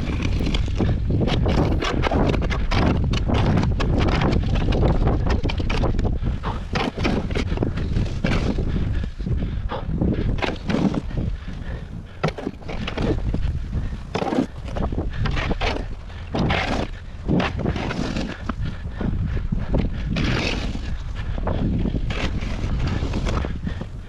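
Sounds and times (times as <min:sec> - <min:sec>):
scrapes and crunches: 0:00.0 - 0:04.3
wind buffeting microphone: 0:00.0 - 0:24.0.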